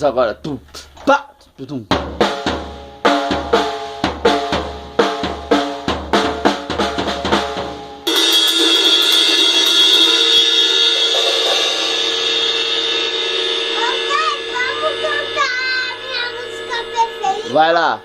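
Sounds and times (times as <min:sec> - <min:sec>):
drum kit strikes on toms: 0:01.9 - 0:18.0
cymbal wash: 0:08.0 - 0:18.0.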